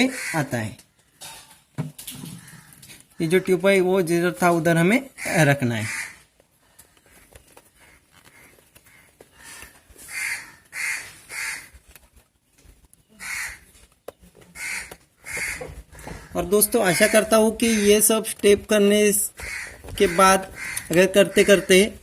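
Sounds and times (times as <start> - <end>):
bird caw-like calls: 2.2 - 3.3, 5.1 - 11.8, 13.1 - 13.8, 14.5 - 17.9, 19.4 - 21.8.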